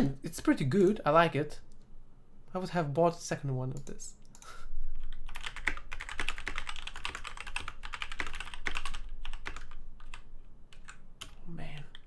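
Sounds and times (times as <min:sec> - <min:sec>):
fast mechanical keyboard typing: 0:05.0 - 0:12.0.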